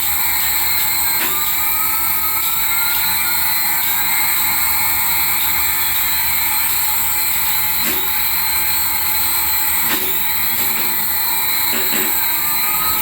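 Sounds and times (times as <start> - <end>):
toy aircraft whirring: 0.0 - 13.0.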